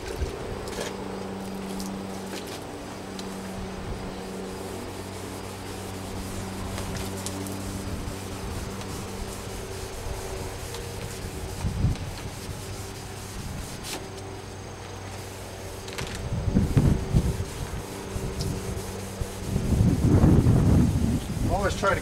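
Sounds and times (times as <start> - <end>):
wet sandpaper rubbing car paint: 0.0 - 14.4, 15.0 - 22.0.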